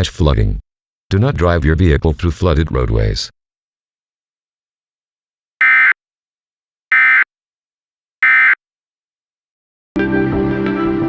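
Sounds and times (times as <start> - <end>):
digital data bursts: 5.6 - 6.0, 6.9 - 7.2, 8.2 - 8.6
background music: 10.0 - 11.0.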